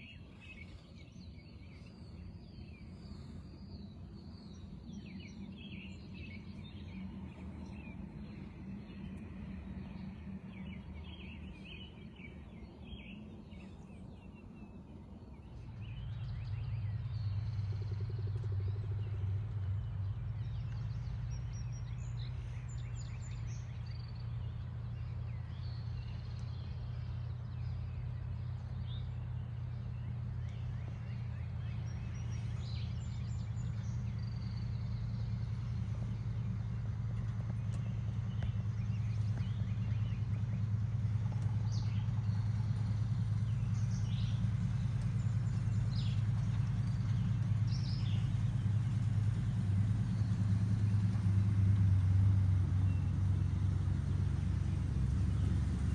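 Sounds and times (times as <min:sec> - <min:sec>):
birds chirping: 0:00.0 - 0:55.9
pickup truck engine running: 0:15.4 - 0:55.9.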